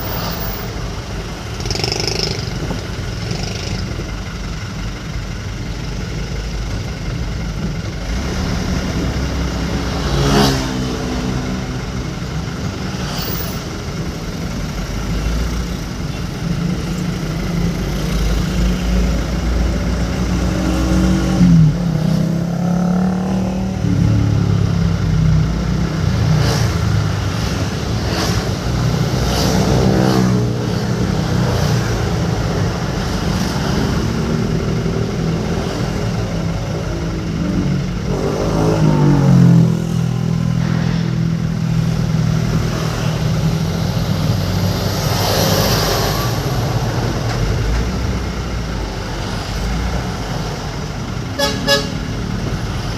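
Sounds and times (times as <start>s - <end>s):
vehicle engine running: 0.0s - 52.9s.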